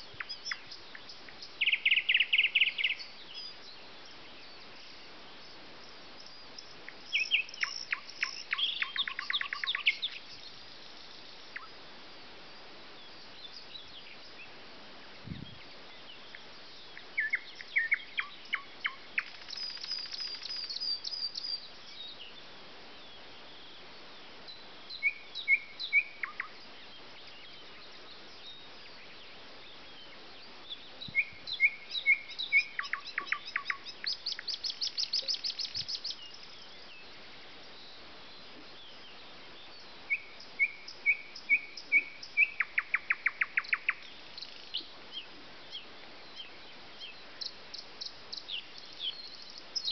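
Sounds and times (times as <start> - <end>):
songbird rattling falling trill: 19.2 - 21.0
bird high rapid trills: 19.2 - 21.4.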